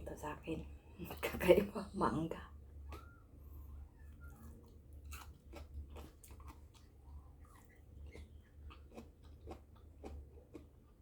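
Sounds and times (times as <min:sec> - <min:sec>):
chewing and biting fruit: 0:02.6 - 0:11.0.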